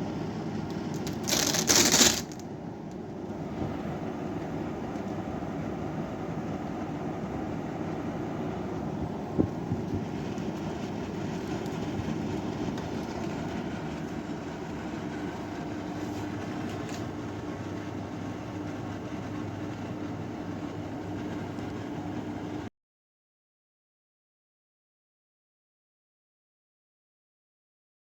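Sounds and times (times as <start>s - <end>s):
air conditioner fan rushing: 0.0s - 22.7s
constant low hum: 0.0s - 22.7s.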